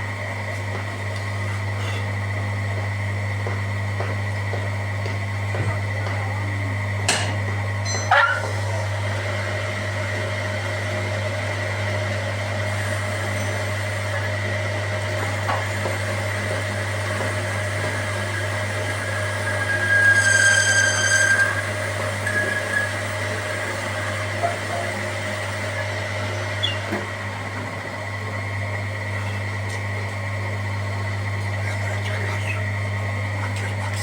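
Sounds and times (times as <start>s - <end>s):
machine humming: 0.0s - 34.0s
high-pitched whine: 15.4s - 26.9s.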